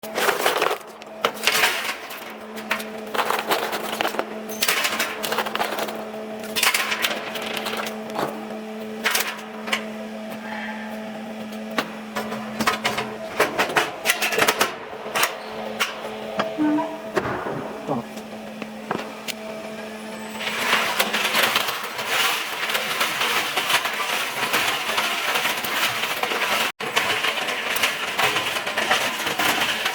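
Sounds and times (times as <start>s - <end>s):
motor hum: 0.0s - 23.6s
machine clattering and clicking: 11.7s - 16.6s.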